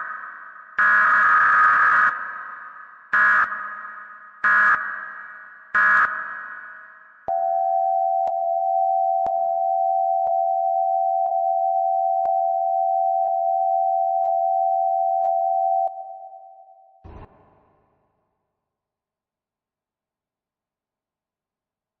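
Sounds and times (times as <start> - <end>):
steady single tone: 7.3 - 18.0.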